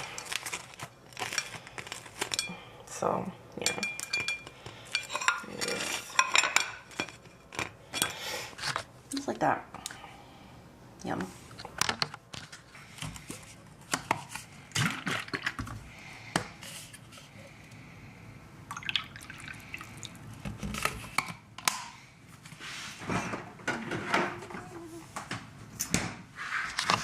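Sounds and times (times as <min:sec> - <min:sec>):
utensils and dishes clicking: 0:03.6 - 0:08.2.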